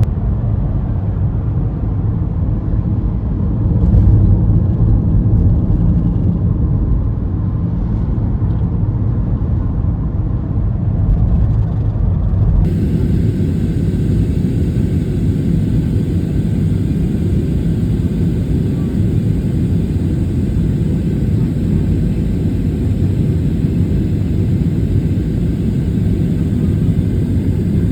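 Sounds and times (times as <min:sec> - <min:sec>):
faint hiss: 0:12.7 - 0:27.9.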